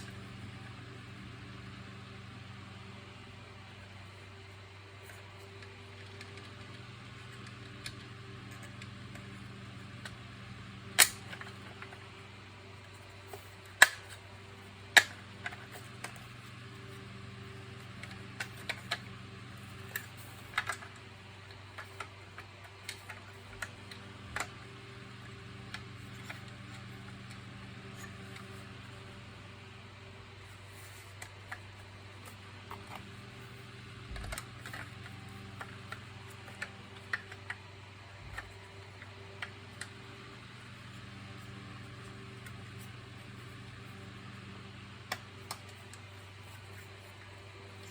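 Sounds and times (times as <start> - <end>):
steady low hum: 0.0 - 47.9
hard plastic parts clicking: 10.9 - 12.1, 12.9 - 29.2, 30.4 - 44.0.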